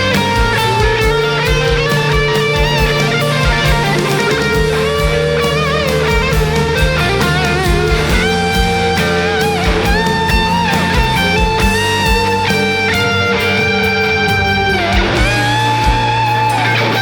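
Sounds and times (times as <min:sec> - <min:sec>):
bass: 0:00.0 - 0:17.0
electric guitar lead with bends: 0:00.0 - 0:17.0
steady drum beat: 0:00.0 - 0:17.0.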